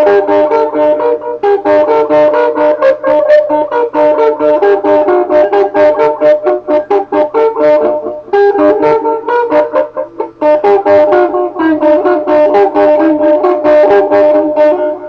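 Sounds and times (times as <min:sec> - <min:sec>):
instrumental music with quick notes: 0:00.0 - 0:15.0.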